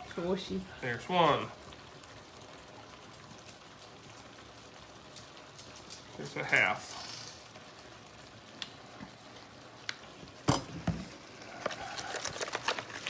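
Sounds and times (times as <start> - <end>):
food sizzling on the stove: 0.0 - 13.0.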